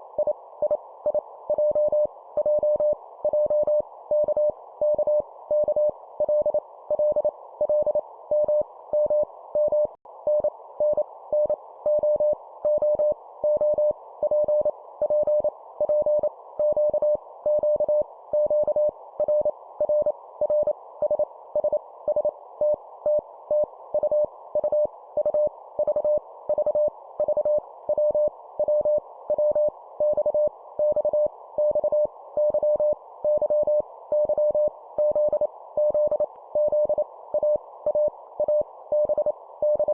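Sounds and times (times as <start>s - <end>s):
morse code beeps: 23.1s - 39.9s.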